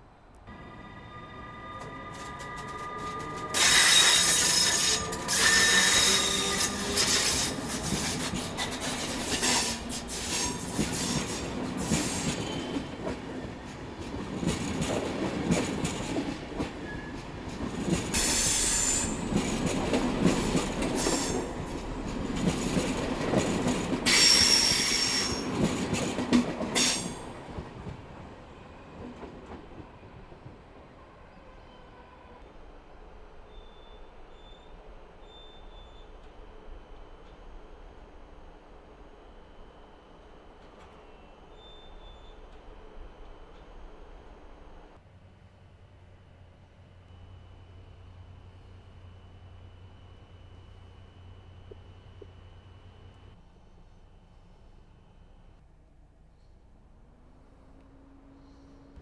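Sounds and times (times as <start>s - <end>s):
train wheels squealing: 0.5s - 13.8s, 15.5s - 17.3s, 17.9s - 21.7s, 22.4s - 27.4s, 33.4s - 36.3s, 40.8s - 42.7s
train wheels clacking on track: 1.8s - 28.3s.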